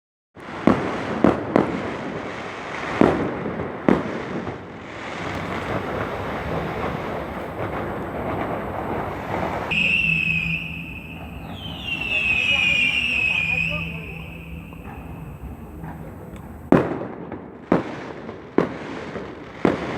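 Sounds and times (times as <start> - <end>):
dense firecracker crackling: 0.4 - 19.9
firecracker bangs: 0.4 - 19.9
low hum: 5.4 - 16.7
steady high-pitched tone: 9.7 - 16.7.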